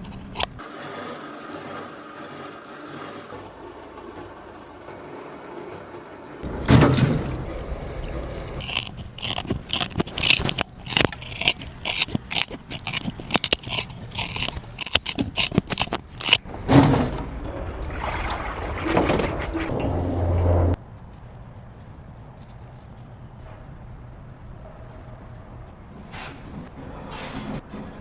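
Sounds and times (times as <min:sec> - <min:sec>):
dog chewing crunchy treat: 0:08.6 - 0:16.4.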